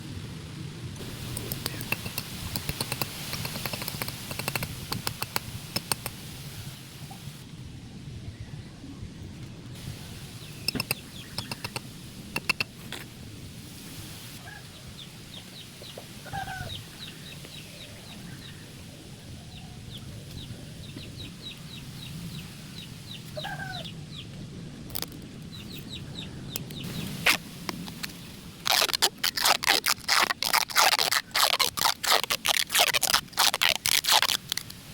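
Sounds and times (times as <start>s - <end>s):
loud rasping strokes: 1.0s - 6.2s
chicken calling: 16.2s - 16.8s, 23.4s - 23.9s.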